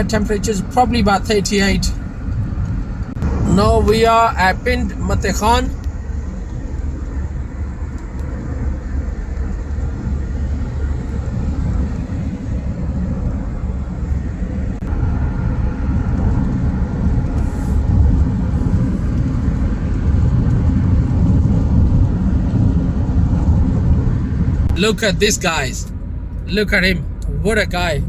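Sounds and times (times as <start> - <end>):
car engine and tyre rumble: 0.0 - 28.0.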